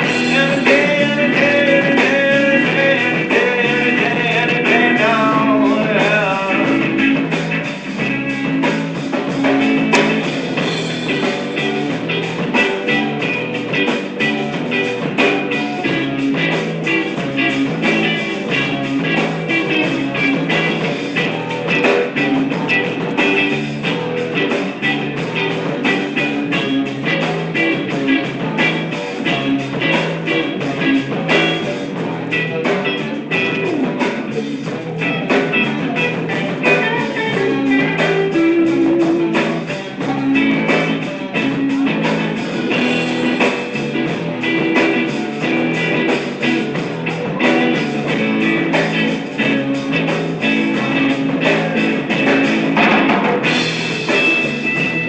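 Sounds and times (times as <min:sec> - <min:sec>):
guitar strumming fast: 0:00.0 - 0:55.0.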